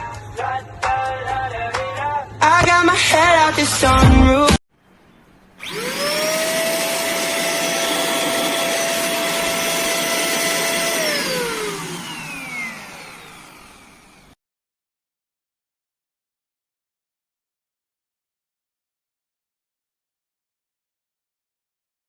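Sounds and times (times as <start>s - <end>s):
vacuum cleaner motor whining: 5.6s - 14.4s.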